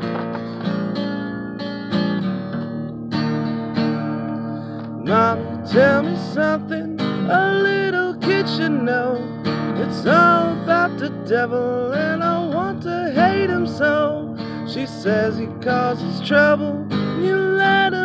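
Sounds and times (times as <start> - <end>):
acoustic guitar strumming: 0.0 - 18.0
person singing: 5.0 - 18.0.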